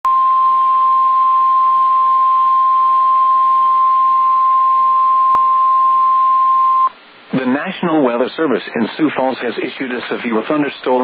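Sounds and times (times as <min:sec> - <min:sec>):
radio hiss: 0:06.9 - 0:11.0.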